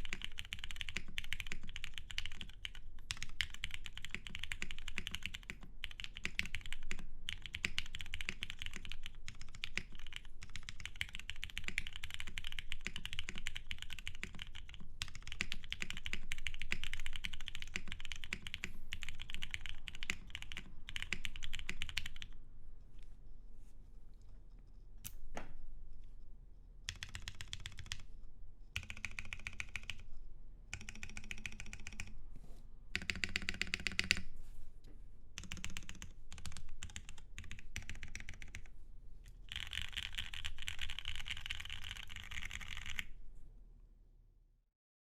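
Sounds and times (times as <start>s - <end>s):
fast typing on mechanical keyboard: 0.0s - 22.4s, 26.9s - 28.1s, 28.8s - 30.1s, 30.7s - 32.1s, 33.0s - 34.2s, 35.4s - 38.7s, 39.4s - 43.1s.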